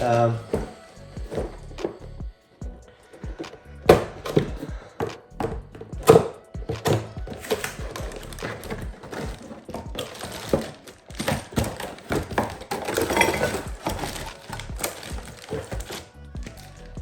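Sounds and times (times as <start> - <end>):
plastic cases clicking and rattling: 0.0 - 2.1, 3.0 - 17.0
small metal tools knocking: 3.9 - 16.8.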